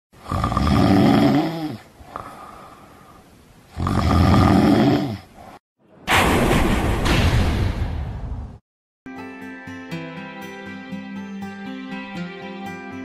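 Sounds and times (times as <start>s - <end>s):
person snoring: 0.2s - 5.4s
quiet breathing: 1.5s - 3.5s.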